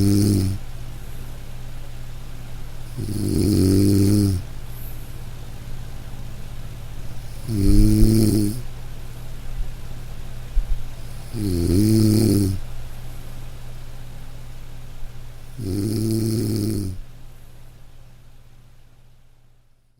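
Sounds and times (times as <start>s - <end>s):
person snoring loudly: 0.0s - 0.6s, 2.9s - 4.5s, 7.2s - 8.7s, 11.1s - 12.6s, 15.5s - 17.0s
steady low hum: 0.0s - 19.9s.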